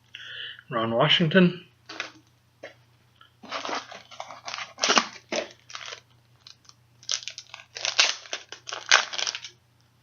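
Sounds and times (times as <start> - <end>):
cards and packaging rustling: 1.9 - 2.2, 3.4 - 9.6.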